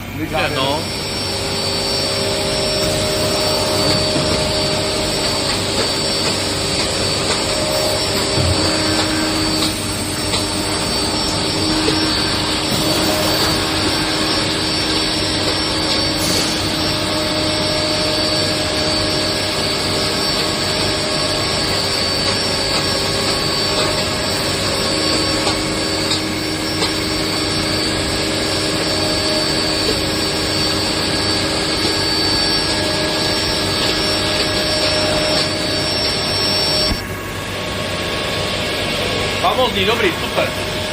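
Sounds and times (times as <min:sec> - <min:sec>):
machining centre running: 0:00.0 - 0:40.9.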